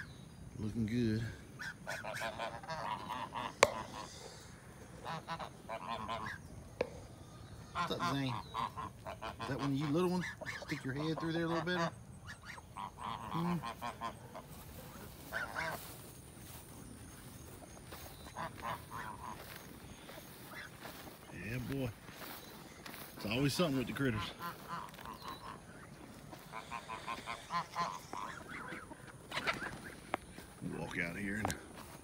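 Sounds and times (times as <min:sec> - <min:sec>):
geese honking: 0:00.0 - 0:32.0.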